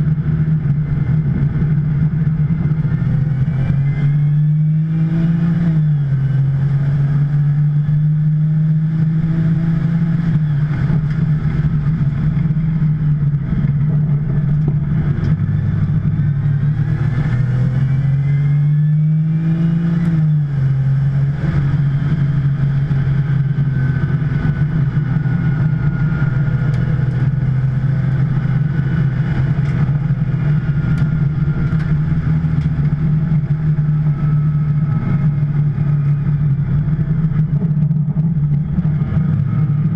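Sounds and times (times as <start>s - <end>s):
car engine revving hard: 3.0s - 12.5s, 13.7s - 36.0s.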